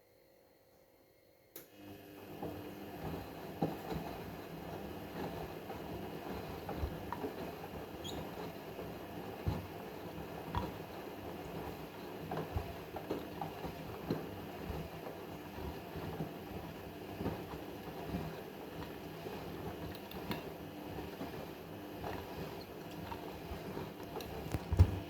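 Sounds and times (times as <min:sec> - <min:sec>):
washing machine motor hum: 0:01.6 - 0:25.0
knocks and thumps of tumbling load: 0:24.4 - 0:25.0.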